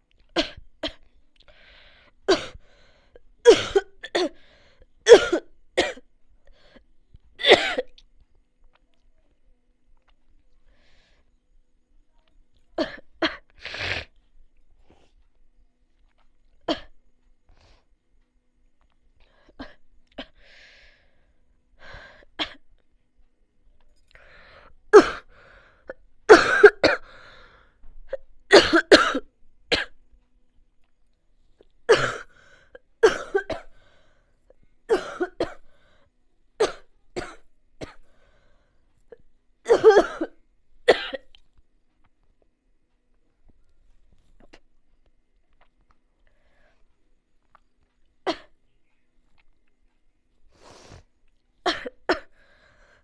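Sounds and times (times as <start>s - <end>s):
person coughing: 26.3s - 27.1s, 31.9s - 32.3s, 34.9s - 35.6s, 39.7s - 40.3s.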